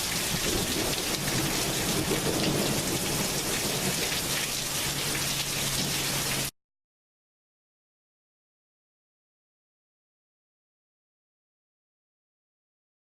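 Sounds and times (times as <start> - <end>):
heavy rain falling: 0.0 - 6.5.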